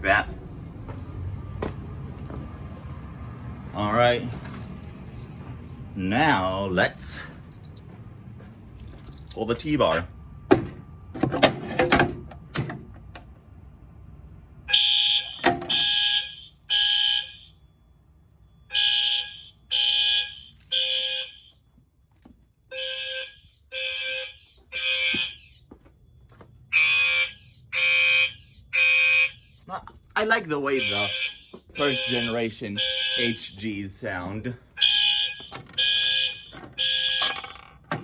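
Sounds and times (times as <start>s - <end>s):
fire alarm horns: 14.6s - 21.7s, 22.7s - 25.7s, 26.6s - 29.7s, 30.3s - 34.0s, 34.6s - 37.8s.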